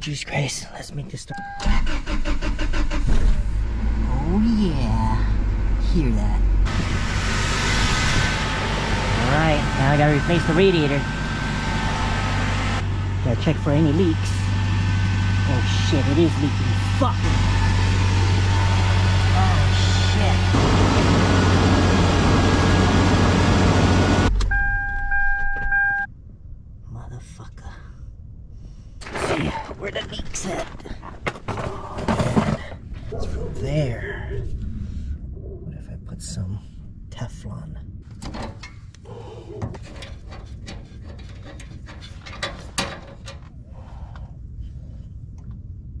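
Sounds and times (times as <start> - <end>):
car warning chime beeping: 1.3 - 1.8, 24.3 - 26.1
car engine running: 1.8 - 26.1.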